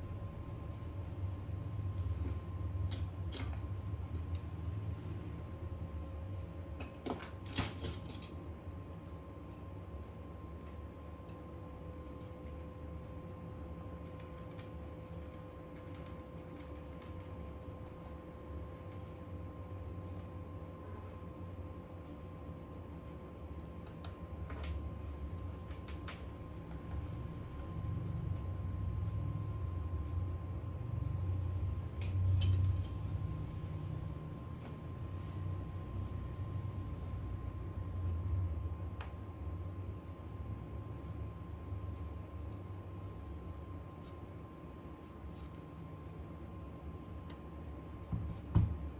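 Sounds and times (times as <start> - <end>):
low electrical hum: 0.0 - 48.9
metal tools clicking and scraping: 6.8 - 8.4, 32.0 - 33.0.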